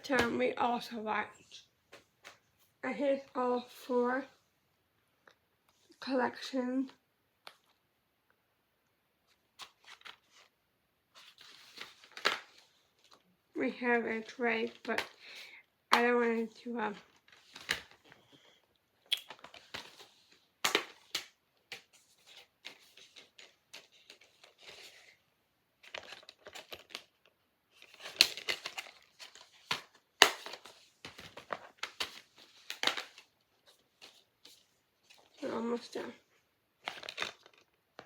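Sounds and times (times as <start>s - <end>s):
crinkling rustles: 11.1s - 13.3s, 16.4s - 25.2s, 25.8s - 36.2s, 36.8s - 38.0s.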